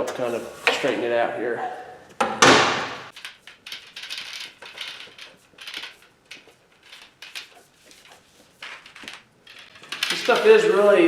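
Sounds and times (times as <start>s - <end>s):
tubing scraping and rustling: 4.2s - 11.0s.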